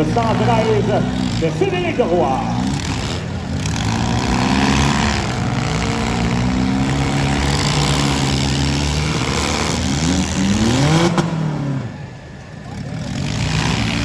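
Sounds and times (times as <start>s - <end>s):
car engines revving: 0.0s - 14.0s.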